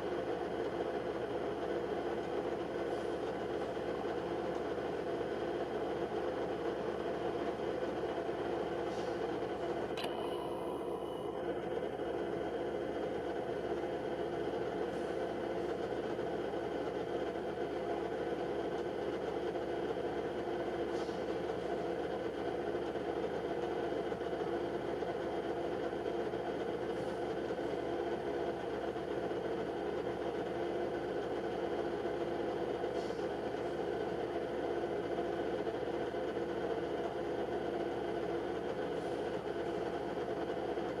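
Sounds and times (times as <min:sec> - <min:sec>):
steady mechanical hum: 0:00.0 - 0:41.0.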